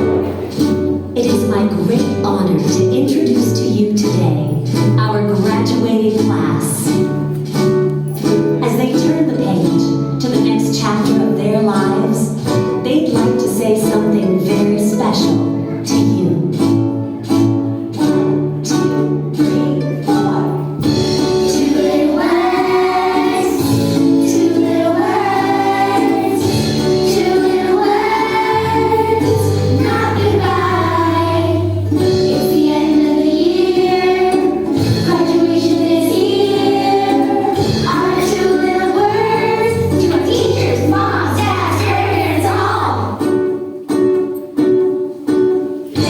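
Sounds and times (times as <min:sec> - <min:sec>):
plucked string instrument: 0:00.0 - 0:46.0
group of voices singing: 0:21.4 - 0:43.2.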